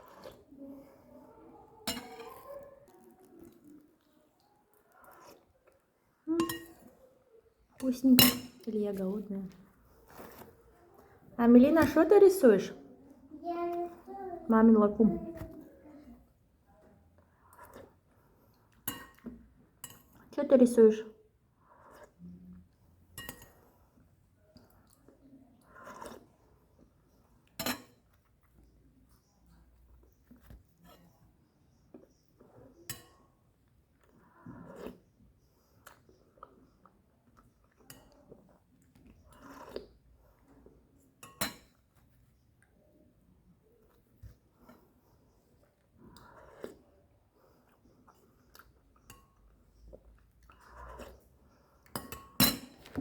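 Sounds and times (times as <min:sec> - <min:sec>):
cutlery clinking against dishes: 0:01.8 - 0:02.6, 0:06.3 - 0:06.9, 0:07.8 - 0:08.7, 0:18.8 - 0:20.3, 0:23.1 - 0:23.6, 0:27.5 - 0:28.1, 0:32.8 - 0:33.3, 0:41.2 - 0:41.8, 0:51.9 - 0:53.0.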